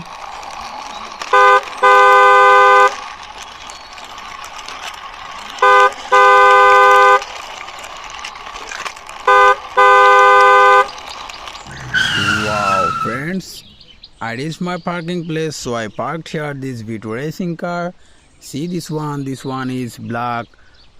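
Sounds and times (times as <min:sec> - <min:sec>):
car horn honking two-tone: 0:01.3 - 0:03.0, 0:05.6 - 0:07.2, 0:09.3 - 0:10.9.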